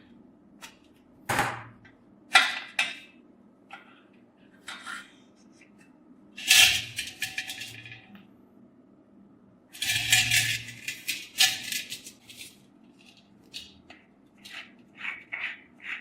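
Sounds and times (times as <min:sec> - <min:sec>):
metal stove parts clattering: 0:06.4 - 0:08.1, 0:09.8 - 0:12.6.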